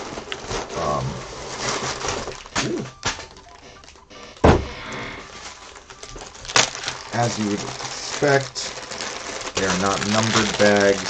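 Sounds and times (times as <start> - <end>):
plastic bags rustling: 0.0 - 11.0
cardboard box thunk: 4.4 - 4.8.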